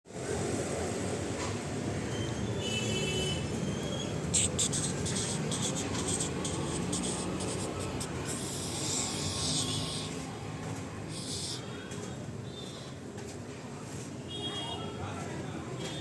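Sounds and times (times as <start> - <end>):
longer hissing rub: 4.3 - 10.2, 11.1 - 11.7
short rasping scrapes: 4.3 - 10.2, 11.1 - 11.8
steady low hum: 4.3 - 10.3.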